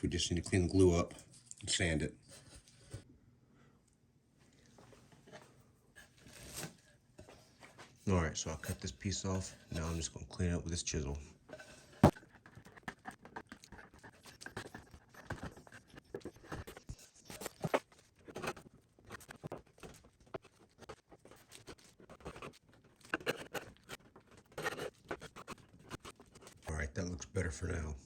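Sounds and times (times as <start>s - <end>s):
chisel scraping wood: 6.0s - 7.4s, 11.5s - 26.7s.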